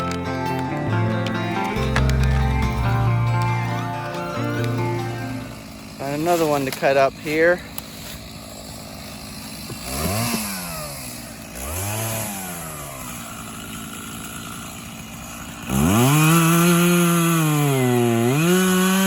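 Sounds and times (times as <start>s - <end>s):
chainsaw idling and revving: 0.0s - 19.0s.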